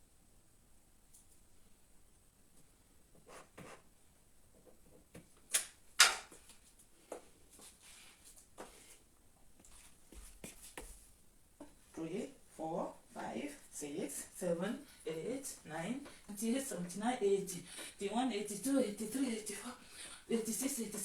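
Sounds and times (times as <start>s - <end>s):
rustles of person moving: 6.3s - 13.4s.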